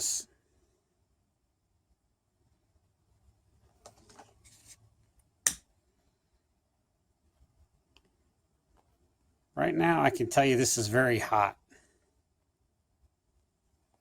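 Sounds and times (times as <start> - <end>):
faint handling noises: 3.6 - 5.2.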